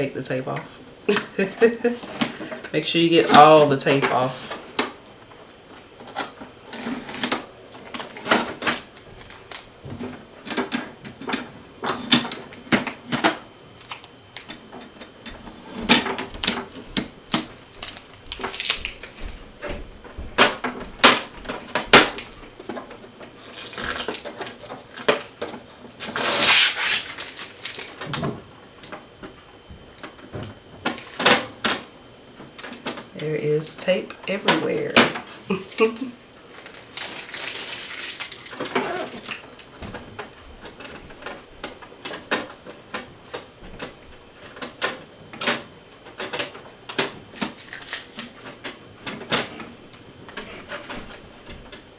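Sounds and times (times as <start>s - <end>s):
tape being peeled: 6.1s - 11.2s, 11.9s - 14.6s, 15.4s - 19.4s, 23.4s - 28.1s, 35.2s - 43.4s, 46.1s - 49.7s
tape ripping: 6.7s - 9.7s, 15.8s - 19.2s, 23.4s - 25.3s, 26.0s - 28.1s, 35.0s - 39.7s, 46.9s - 48.4s.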